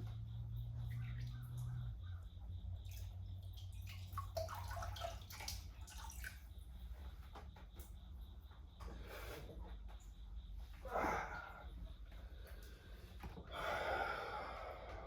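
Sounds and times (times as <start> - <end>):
steady low hum: 0.0 - 15.0
water sloshing and splashing: 2.7 - 6.8.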